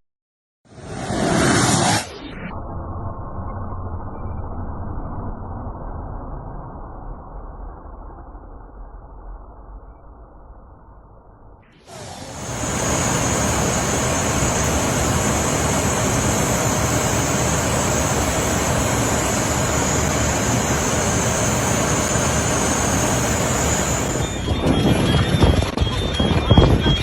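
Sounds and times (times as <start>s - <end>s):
faint high whine: 0.7s - 27.0s
airliner cabin noise: 11.9s - 27.0s.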